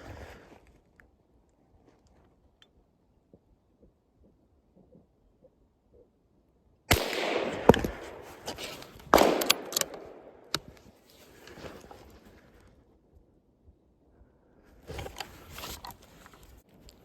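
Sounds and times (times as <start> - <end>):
rifle shots with echo: 6.9 - 10.8
sharp cracks: 6.9 - 11.9.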